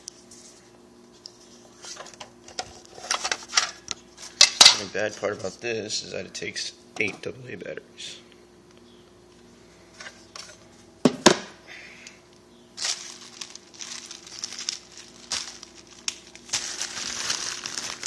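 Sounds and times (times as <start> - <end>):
packaging crinkling and rustling: 12.8 - 18.0.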